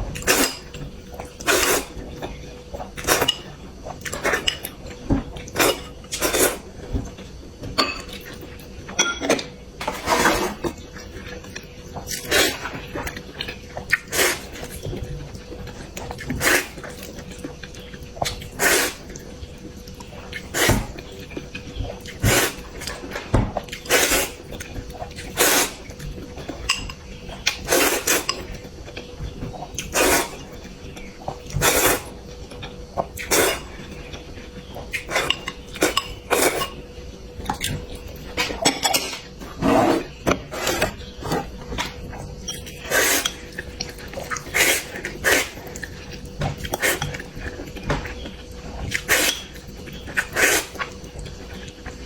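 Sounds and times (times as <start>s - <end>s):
utensils clinking on a bowl: 7.8s - 11.2s, 26.4s - 28.6s, 37.5s - 39.3s
noodle slurping: 42.8s - 43.4s.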